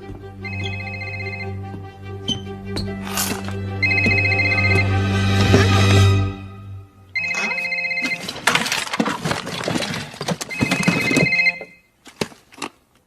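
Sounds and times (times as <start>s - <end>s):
phone trilling ring: 0.4s - 1.6s, 3.8s - 4.9s, 7.2s - 8.5s, 10.5s - 11.9s
rustling: 7.2s - 13.0s.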